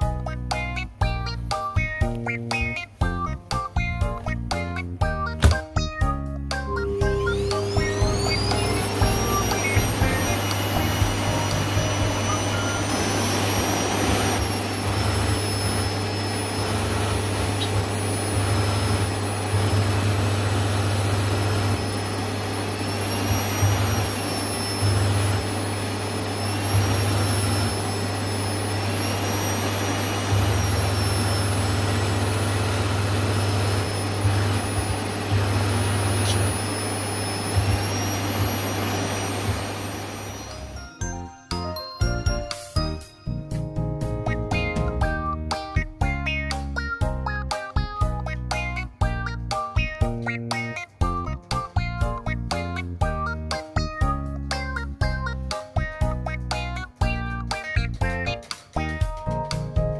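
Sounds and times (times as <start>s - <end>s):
vacuum cleaner running: 6.5s - 46.4s.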